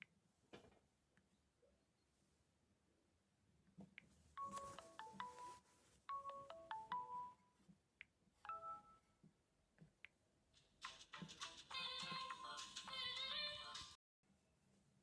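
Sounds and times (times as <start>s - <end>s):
faint phone ringtone melody: 4.4s - 7.6s, 8.4s - 9.2s.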